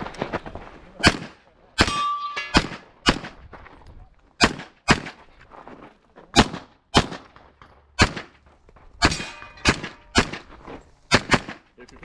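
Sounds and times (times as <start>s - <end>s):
gunshots with echo: 1.0s - 3.4s, 8.0s - 8.3s, 9.0s - 10.5s.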